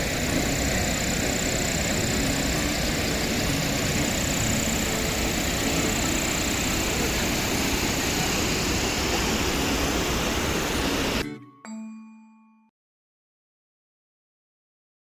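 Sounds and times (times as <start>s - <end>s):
water pouring down waterfall: 0.0s - 11.2s
thin high steady tone: 0.0s - 11.3s.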